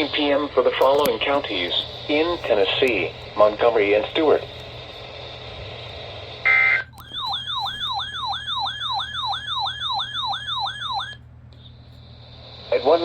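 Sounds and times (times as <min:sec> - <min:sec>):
electronic yelp siren: 0:06.5 - 0:11.2.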